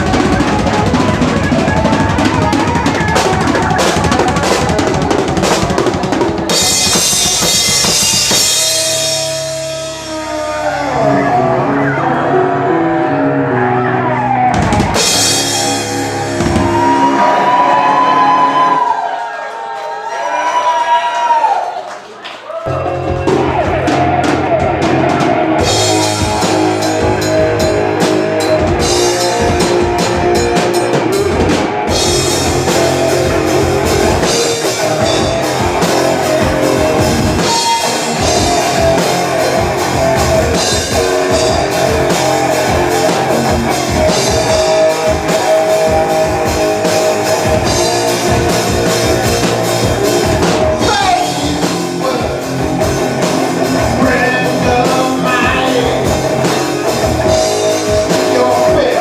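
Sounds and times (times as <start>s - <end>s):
drum kit beat: 0.0s - 11.4s, 14.4s - 19.2s, 22.7s - 59.0s
electric guitar: 0.0s - 19.2s, 22.7s - 59.0s
person singing: 50.7s - 59.0s.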